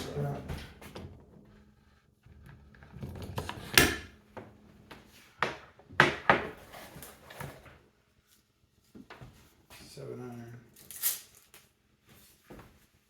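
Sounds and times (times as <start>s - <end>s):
golf irons knocking and clattering: 2.3s - 4.2s.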